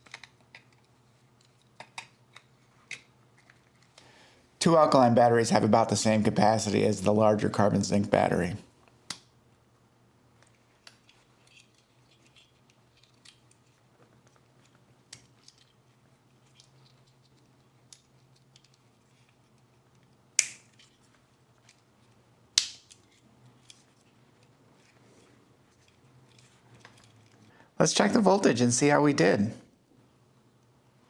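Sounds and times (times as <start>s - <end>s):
plastic clicks of batteries: 20.4s - 20.8s.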